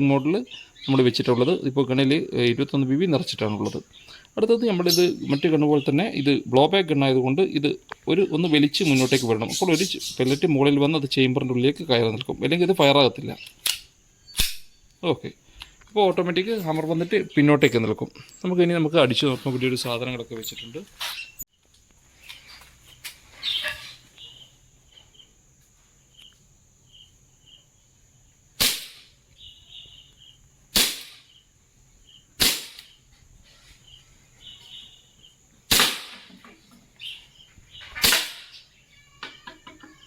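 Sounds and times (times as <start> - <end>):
air pistol shots: 13.6 - 14.7, 28.6 - 29.2, 30.7 - 31.3, 32.4 - 33.0, 35.7 - 36.4, 38.0 - 38.6.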